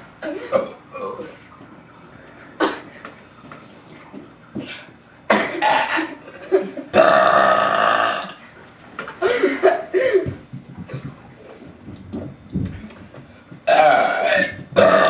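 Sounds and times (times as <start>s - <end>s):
loud belching: 7.0s - 8.4s, 13.7s - 15.0s.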